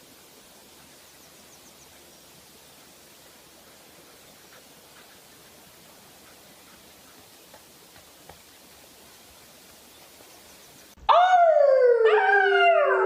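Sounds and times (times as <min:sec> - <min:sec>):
faint hiss: 0:00.0 - 0:11.0
dog howling: 0:11.1 - 0:13.0.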